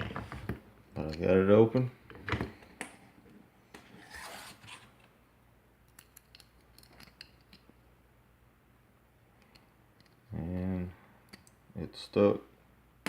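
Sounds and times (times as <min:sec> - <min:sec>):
metal scraping: 0:03.8 - 0:05.0.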